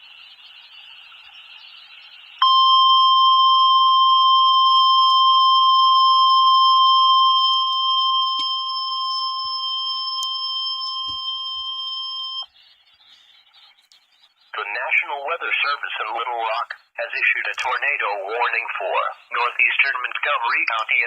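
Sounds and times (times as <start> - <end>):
steady warning alarm tone: 2.4 - 12.5.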